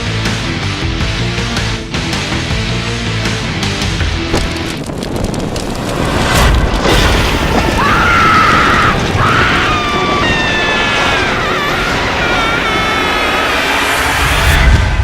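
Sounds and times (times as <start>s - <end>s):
dramatic film music: 0.0s - 15.0s
heavy rumbling booms: 4.1s - 15.0s.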